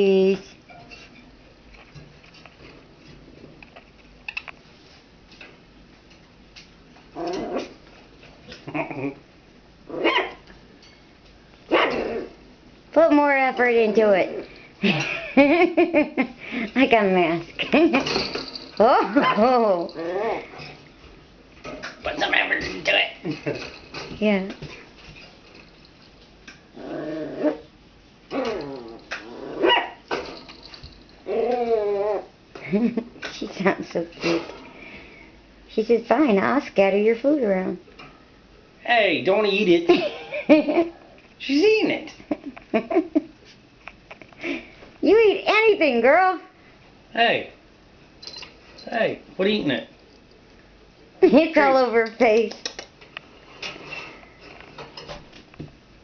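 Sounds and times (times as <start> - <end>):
puppy growling: 7.2 - 7.8, 8.5 - 9.2, 11.7 - 12.4, 18.8 - 20.8, 26.7 - 27.7, 28.3 - 30.0, 31.2 - 32.4
puppy barking: 10.0 - 10.4, 11.7 - 12.3, 19.2 - 19.5, 29.6 - 30.0.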